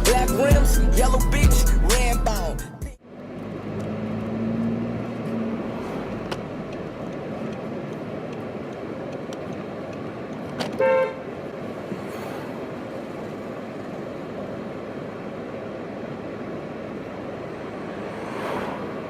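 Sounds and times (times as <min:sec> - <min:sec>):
street traffic noise: 0:00.0 - 0:19.0
car horn toot: 0:10.6 - 0:11.4.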